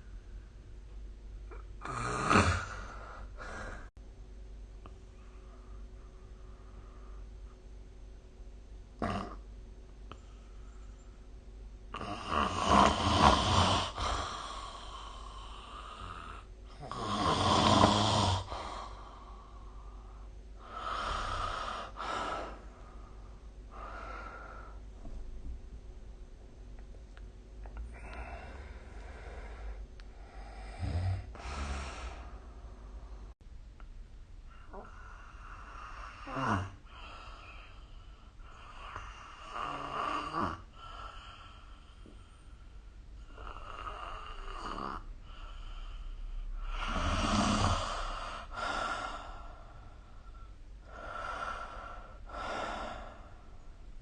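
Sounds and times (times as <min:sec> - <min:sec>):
person snoring: 0:01.5 - 0:03.9, 0:09.0 - 0:09.4, 0:11.9 - 0:24.8, 0:27.8 - 0:33.3, 0:34.5 - 0:42.1, 0:43.2 - 0:53.5
soft breathing: 0:02.6 - 0:04.0, 0:04.8 - 0:07.6, 0:10.1 - 0:11.4, 0:13.7 - 0:16.9, 0:18.4 - 0:25.5, 0:27.6 - 0:33.4, 0:40.6 - 0:54.0.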